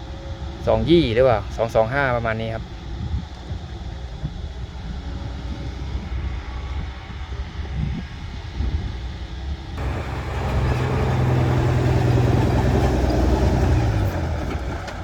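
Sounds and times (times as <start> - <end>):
truck diesel engine labouring: 9.8 - 15.0.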